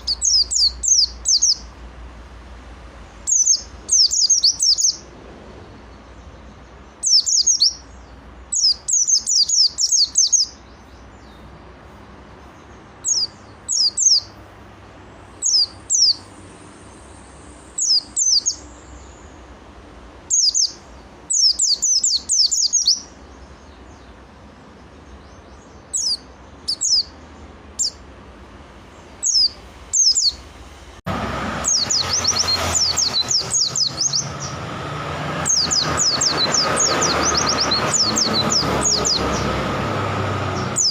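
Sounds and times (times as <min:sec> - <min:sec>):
background hiss: 0:00.0 - 0:31.2
songbird chirping: 0:00.0 - 0:40.9.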